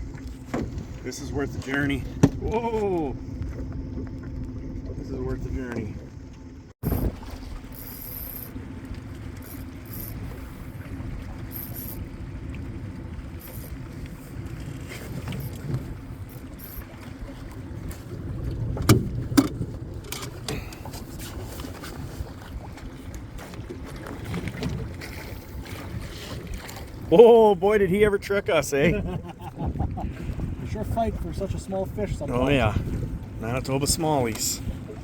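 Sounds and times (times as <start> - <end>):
water around boat: 0.0 - 35.0
wind: 0.0 - 35.0
sharp knocks on boat: 0.2 - 1.0, 2.0 - 2.6, 18.7 - 20.6.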